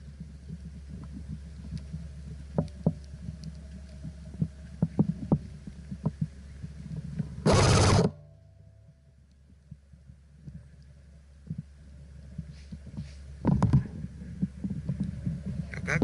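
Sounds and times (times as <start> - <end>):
low rumble of moving camera: 0.0 - 16.0
loud rushing burst: 7.5 - 8.1
clicks and thumps: 13.4 - 14.0.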